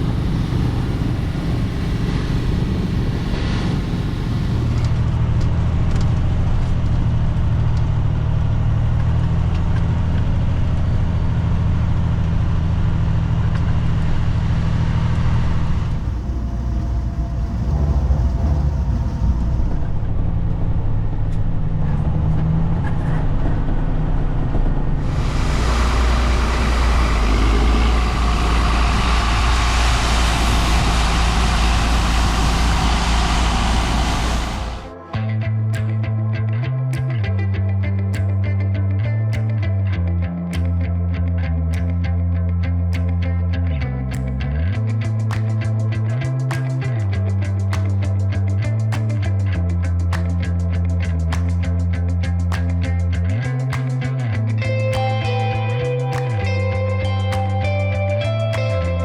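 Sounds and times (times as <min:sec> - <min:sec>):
loud even rushing noise: 0:00.0 - 0:06.8, 0:13.2 - 0:35.1
farm machine engine rumble: 0:00.0 - 0:34.9.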